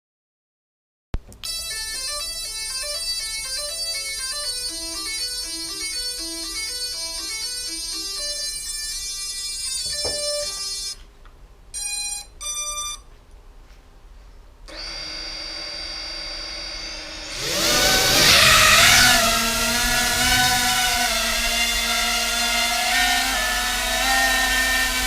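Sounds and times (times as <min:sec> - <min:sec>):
music: 0:01.5 - 0:10.9
short electronic beeps: 0:05.4 - 0:11.0, 0:11.8 - 0:13.1
quadcopter motors whining: 0:14.7 - 0:25.0.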